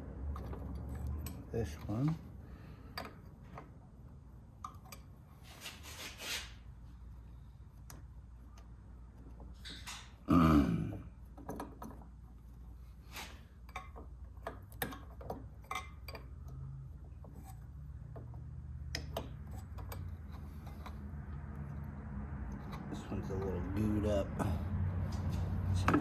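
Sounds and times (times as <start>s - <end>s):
loud belch: 10.3s - 11.1s
wrench clicks and taps: 18.0s - 21.0s.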